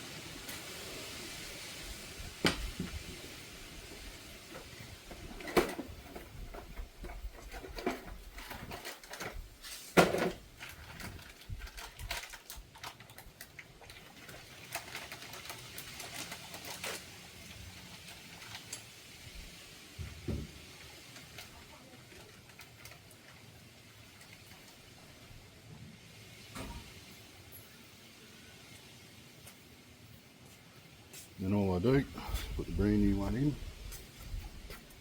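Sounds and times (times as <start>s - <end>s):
hand tools and metal parts clinking: 4.5s - 18.9s.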